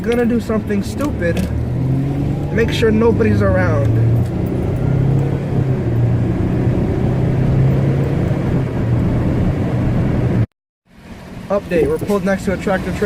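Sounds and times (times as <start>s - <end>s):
car engine droning: 0.0s - 13.0s
road noise: 0.0s - 13.0s.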